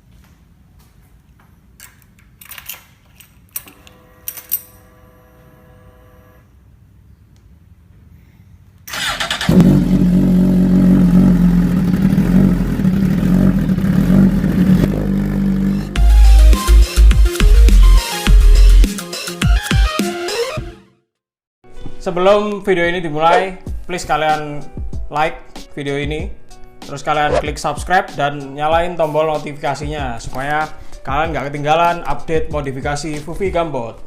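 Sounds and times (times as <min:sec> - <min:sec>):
motorcycle engine starting: 0:08.9 - 0:16.0.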